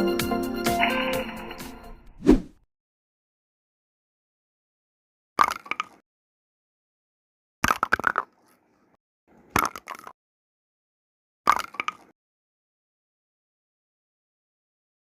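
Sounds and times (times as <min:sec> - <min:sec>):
rapid clicks of small hard objects: 0:07.6 - 0:08.5, 0:09.5 - 0:10.2, 0:11.5 - 0:12.1.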